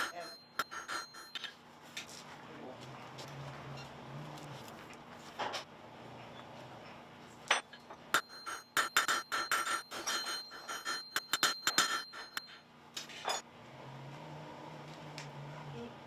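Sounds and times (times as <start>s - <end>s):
hammer striking metal on anvil: 0.0s - 1.4s, 7.5s - 12.6s.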